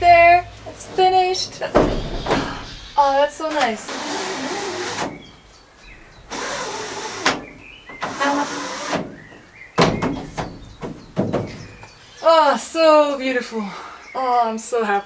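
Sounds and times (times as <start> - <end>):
roof window sliding: 0.0 - 11.9.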